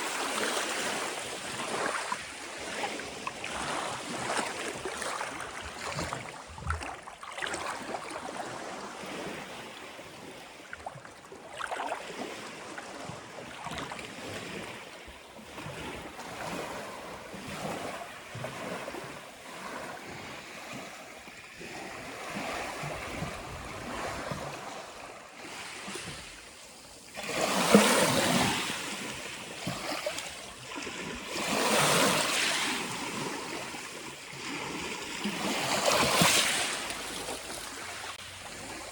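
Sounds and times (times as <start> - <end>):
sea waves washing onto shore: 15.4 - 38.9.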